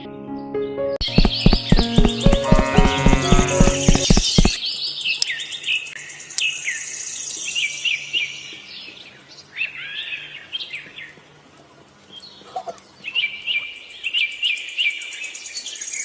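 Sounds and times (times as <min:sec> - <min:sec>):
birds chirping: 0:01.0 - 0:16.0.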